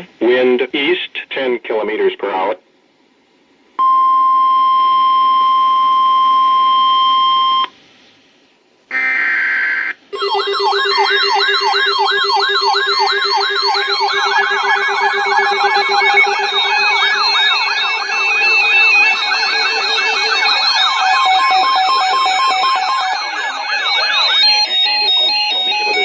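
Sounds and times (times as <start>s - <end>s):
fast-warbling siren-like alarm: 10.2s - 26.0s
steady electronic alert tone: 10.2s - 26.0s.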